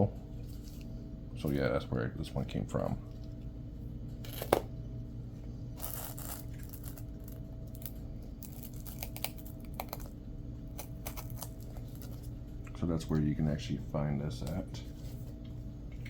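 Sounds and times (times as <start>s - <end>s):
steady low hum: 0.0s - 16.0s
tearing rustle: 5.8s - 10.1s.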